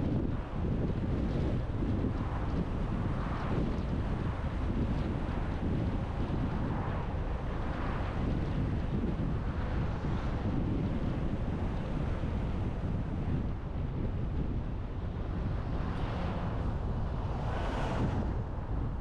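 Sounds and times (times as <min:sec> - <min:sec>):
car road noise: 0:06.7 - 0:19.0
wind rushing: 0:06.7 - 0:19.0.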